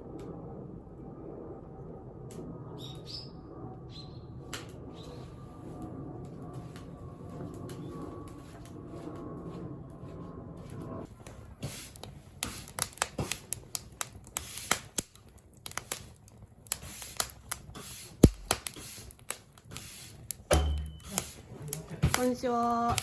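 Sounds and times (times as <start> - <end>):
dry wood crackling and snapping: 11.2 - 23.0.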